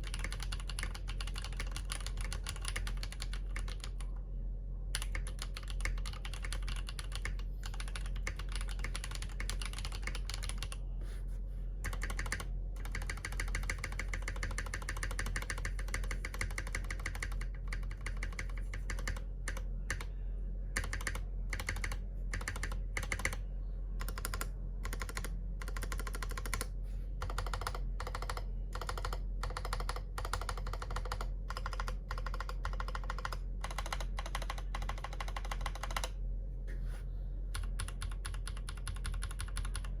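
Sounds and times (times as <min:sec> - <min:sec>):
typing on mechanical keyboard: 0:00.0 - 0:04.1, 0:04.9 - 0:10.8, 0:11.8 - 0:20.1, 0:20.8 - 0:23.4, 0:24.0 - 0:36.1, 0:37.5 - 0:40.0
steady low hum: 0:00.0 - 0:40.0.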